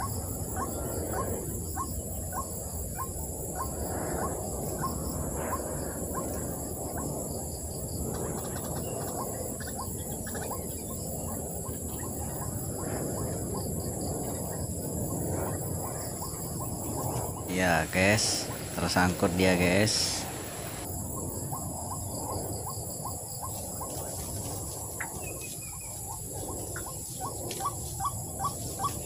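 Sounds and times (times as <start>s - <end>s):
high insect drone: 0.0s - 29.0s
bird chirping: 8.3s - 13.8s.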